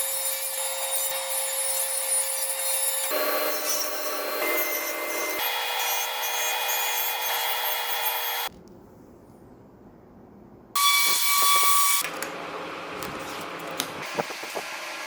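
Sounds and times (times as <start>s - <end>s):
woodworking power tool whining: 0.0s - 8.5s.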